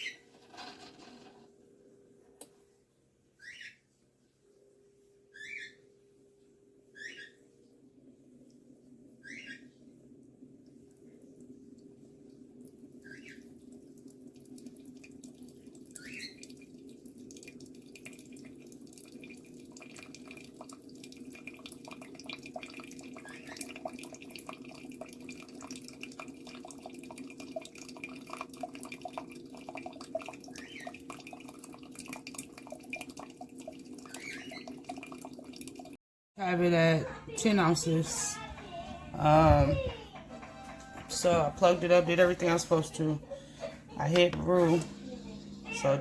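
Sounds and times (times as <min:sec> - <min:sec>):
water running: 0:00.0 - 0:01.6, 0:07.6 - 0:46.0
dripping and crackling clicks: 0:10.2 - 0:36.0.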